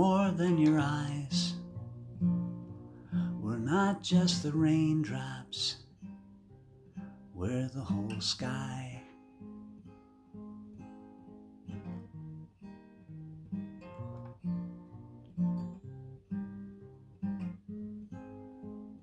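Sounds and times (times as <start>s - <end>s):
acoustic guitar chords: 0.0s - 19.0s.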